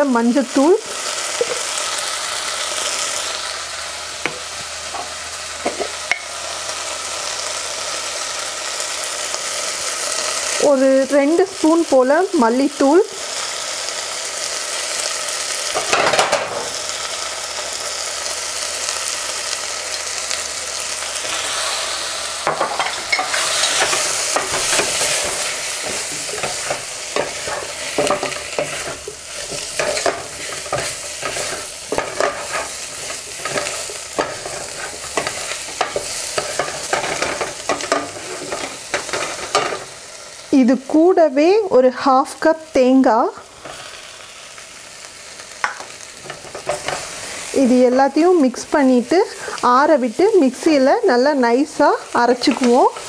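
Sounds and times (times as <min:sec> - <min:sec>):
onion and spices sizzling in oil: 0:00.0 - 0:53.0
spoon scraping pan while stirring: 0:22.4 - 0:39.9, 0:45.6 - 0:47.3.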